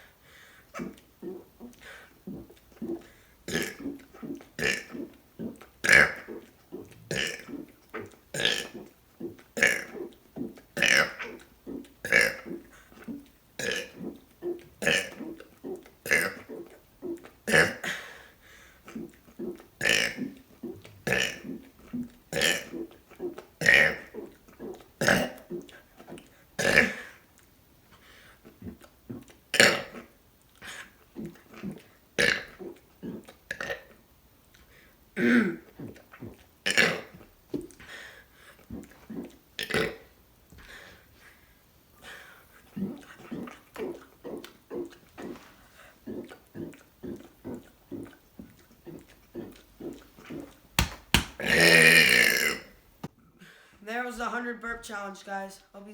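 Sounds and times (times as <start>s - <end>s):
person burping: 0.8s - 7.7s, 8.4s - 12.7s, 13.6s - 16.6s, 17.4s - 18.1s, 22.3s - 25.6s, 26.6s - 27.1s, 35.2s - 35.6s, 50.3s - 52.7s.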